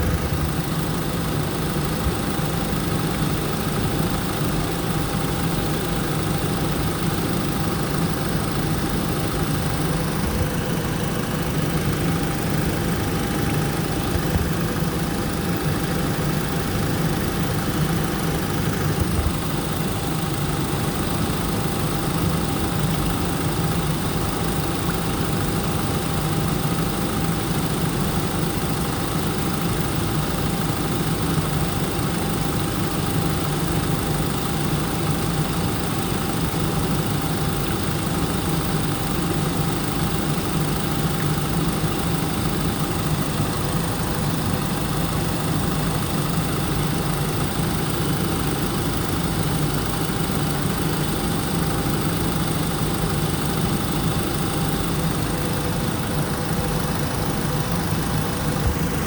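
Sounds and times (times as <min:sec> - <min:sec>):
car engine idling: 0:00.0 - 0:26.3, 0:43.1 - 0:59.0.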